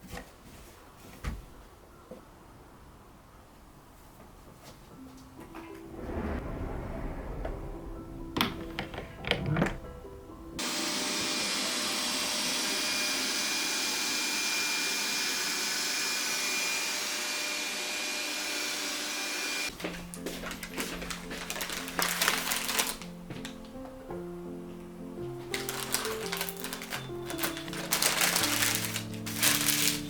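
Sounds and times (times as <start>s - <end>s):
soft music: 4.6s - 14.3s, 19.7s - 30.0s
appliance motor with rushing air: 10.6s - 19.7s.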